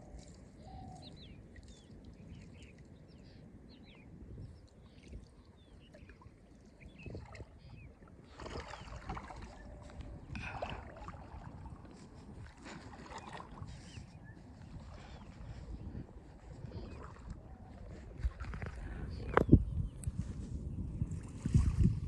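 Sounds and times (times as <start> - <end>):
water splashing and sloshing: 0.0 - 3.3, 4.6 - 19.5, 21.1 - 22.0
wind rumble on microphone: 0.0 - 22.0
birds chirping: 13.0 - 20.1.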